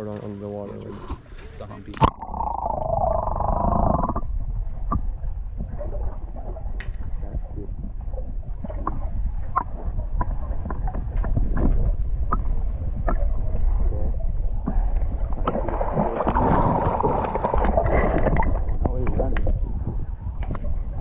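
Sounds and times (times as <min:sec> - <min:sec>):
steady low rumble: 0:00.0 - 0:21.0
river water gurgling and splashing: 0:14.7 - 0:19.4.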